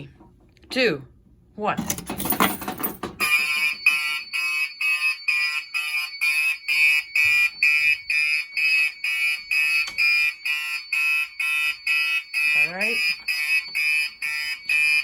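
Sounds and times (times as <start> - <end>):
fire alarm horn pulsing: 3.2 - 15.0.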